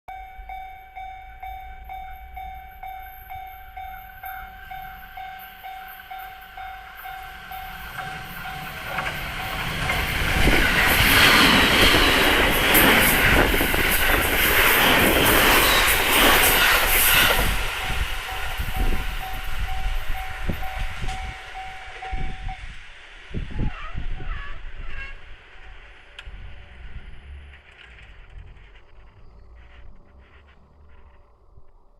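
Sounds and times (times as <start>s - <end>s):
level-crossing warning bell: 0.1s - 22.7s
train wheels with rail clatter: 0.2s - 31.9s.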